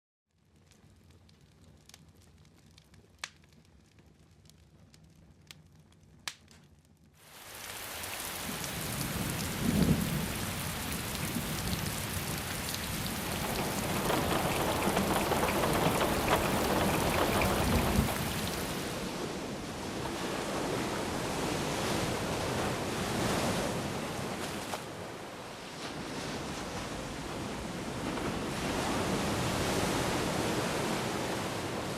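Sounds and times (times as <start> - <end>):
heavy rain: 7.2 - 19.7
thunder rumbling: 8.5 - 20.8.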